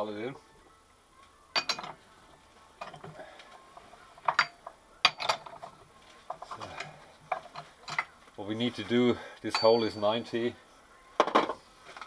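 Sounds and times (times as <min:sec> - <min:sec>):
metal tools clinking: 0:01.6 - 0:02.0, 0:02.8 - 0:10.3.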